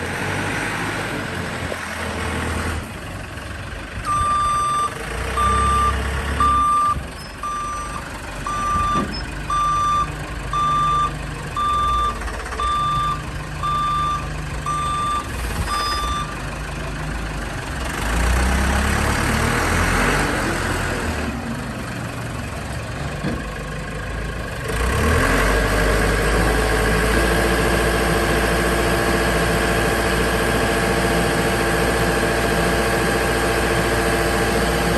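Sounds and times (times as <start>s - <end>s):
construction machine engine running: 0.0s - 34.9s
backup alarm beeping: 4.1s - 16.3s.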